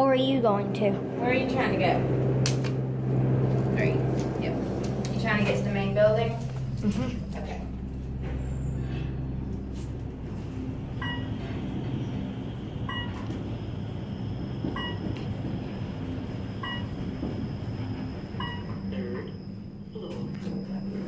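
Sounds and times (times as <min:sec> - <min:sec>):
elevator car rumbling and humming: 0:00.0 - 0:21.0
short electronic beep: 0:11.0 - 0:11.3.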